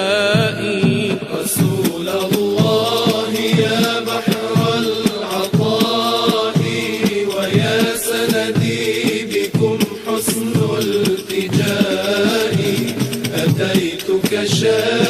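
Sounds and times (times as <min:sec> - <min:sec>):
steady percussion beat: 0:00.0 - 0:15.0
wordless vocal tones: 0:00.0 - 0:15.0.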